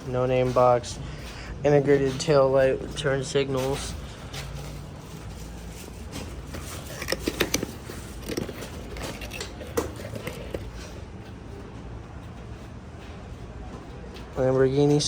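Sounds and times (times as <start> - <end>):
packaging crinkling and clicking: 5.2 - 10.9.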